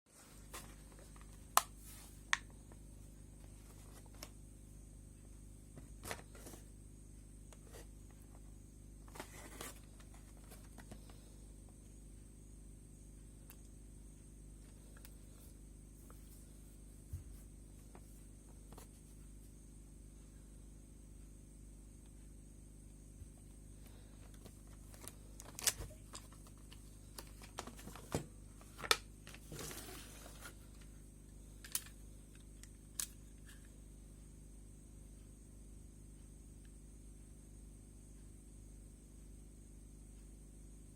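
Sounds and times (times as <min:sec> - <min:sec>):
low electrical hum: 0:00.1 - 0:40.9
packaging rustling and scraping: 0:09.1 - 0:11.0, 0:24.4 - 0:30.7.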